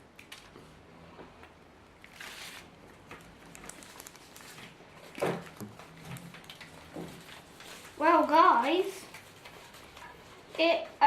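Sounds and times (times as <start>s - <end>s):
packaging rustle: 2.0s - 10.5s.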